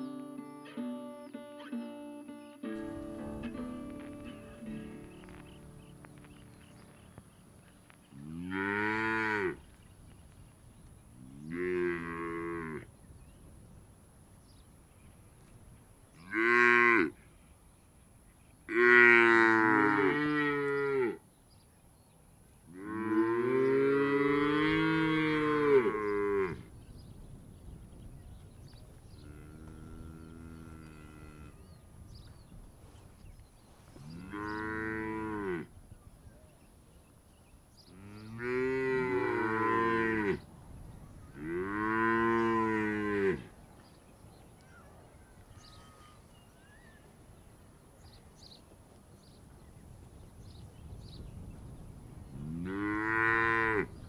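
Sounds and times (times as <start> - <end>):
cattle mooing: 29.3 - 31.6.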